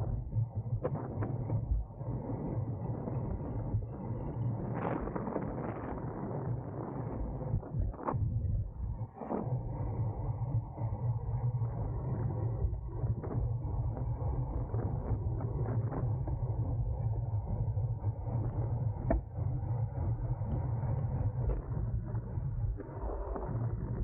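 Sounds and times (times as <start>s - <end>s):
wind rumbling over microphone: 0.0s - 24.0s.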